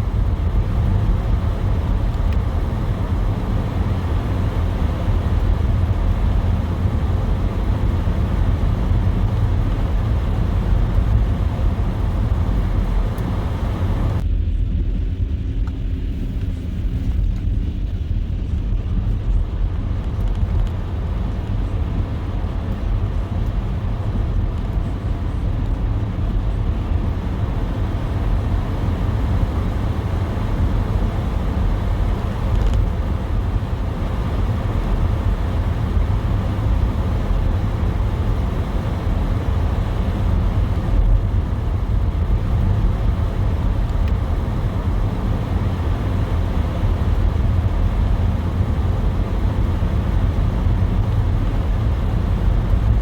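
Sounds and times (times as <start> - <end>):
car driving road noise: 0.0 - 53.0.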